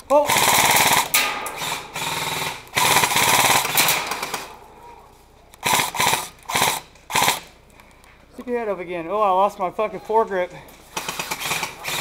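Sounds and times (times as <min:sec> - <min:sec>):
airsoft guns firing bursts: 0:00.1 - 0:04.6, 0:05.6 - 0:07.5, 0:10.9 - 0:12.0.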